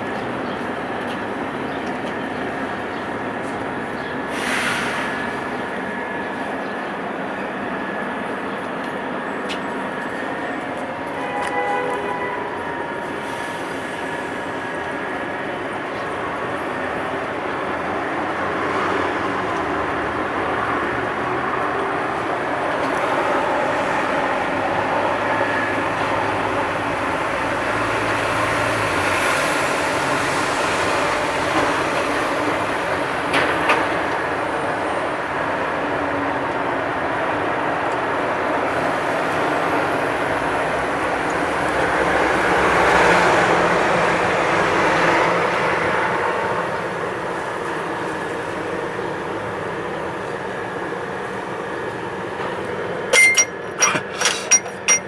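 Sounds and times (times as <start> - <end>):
city street traffic: 0.0 - 55.0.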